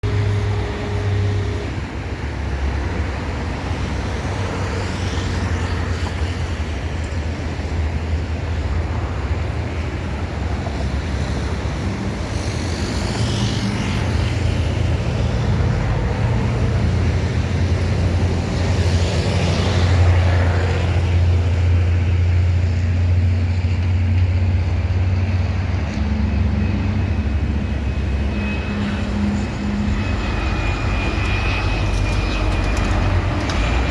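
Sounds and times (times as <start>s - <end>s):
jet engines: 0.0s - 33.9s
low traffic rumble: 0.0s - 33.9s
vehicles passing: 0.0s - 33.9s.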